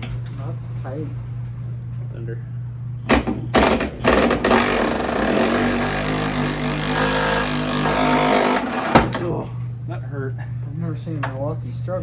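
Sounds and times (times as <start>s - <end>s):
impact wrench hammering: 3.1s - 9.3s.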